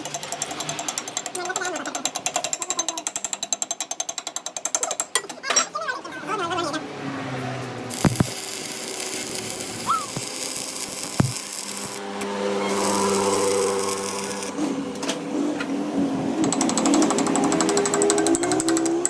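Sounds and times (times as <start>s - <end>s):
power tool running: 7.8s - 15.4s, 16.2s - 19.0s
sharp knocks: 8.1s - 8.4s.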